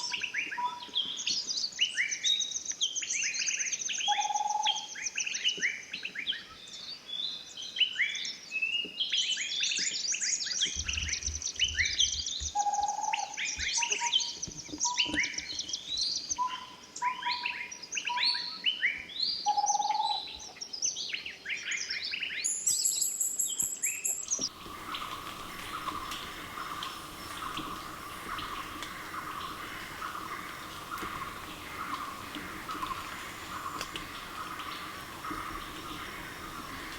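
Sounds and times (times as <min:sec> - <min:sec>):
tropical forest birds chirping: 0:00.0 - 0:36.9
lower whistled bird notes: 0:22.4 - 0:36.9.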